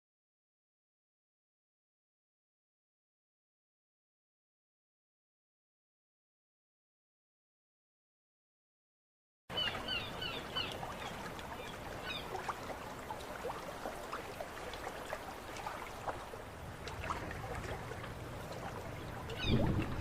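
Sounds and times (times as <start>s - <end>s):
birds calling: 9.5s - 13.5s, 17.6s - 20.0s
water lapping and trickling: 9.5s - 20.0s.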